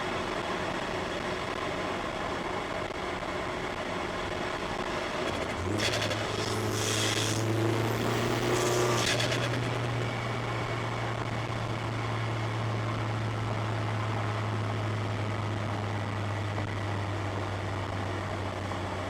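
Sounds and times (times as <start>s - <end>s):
car engine running: 3.4s - 13.1s.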